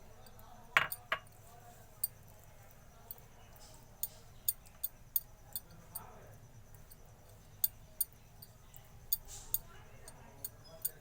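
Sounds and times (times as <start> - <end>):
utensil clicking against plate: 7.6 - 11.0.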